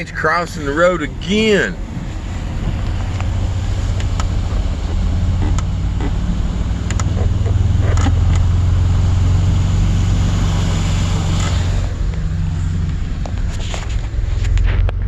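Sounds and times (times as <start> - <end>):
vehicle engine droning: 0.0 - 15.0.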